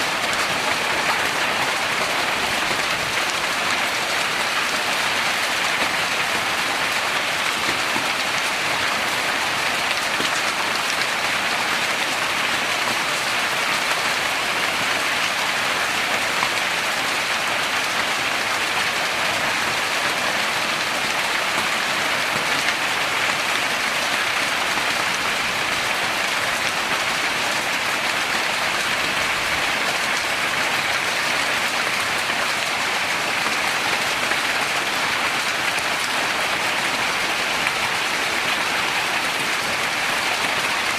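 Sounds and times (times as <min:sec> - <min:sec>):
heavy rain pouring: 0:00.0 - 0:40.9.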